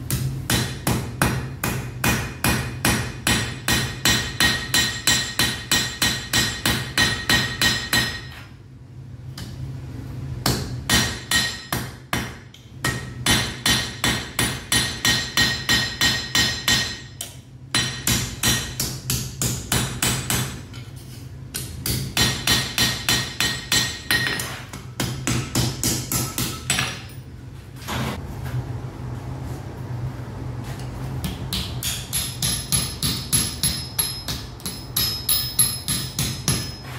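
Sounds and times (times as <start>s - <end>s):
steady low hum: 0.0s - 36.9s
hammer striking iron on anvil: 0.1s - 8.5s, 10.4s - 20.8s, 21.5s - 27.2s, 31.2s - 36.9s.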